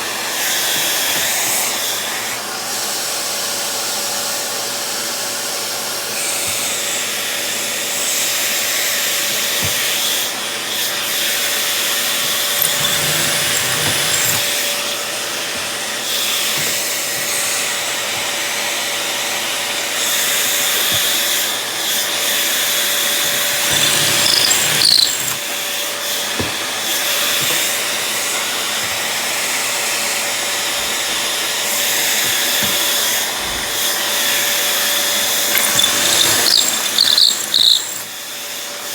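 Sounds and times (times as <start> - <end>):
power tool motor running: 11.8 - 14.9, 22.3 - 29.0, 34.9 - 38.2.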